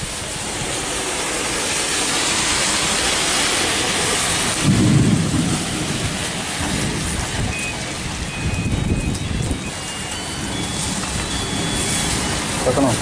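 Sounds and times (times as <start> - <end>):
heavy rain: 0.0 - 13.0
low rumble: 3.2 - 9.7.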